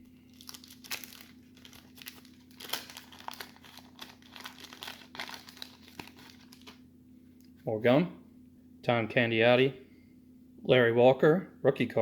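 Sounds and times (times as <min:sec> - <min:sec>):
paper wrapper tearing and crinkling: 0:00.3 - 0:06.8.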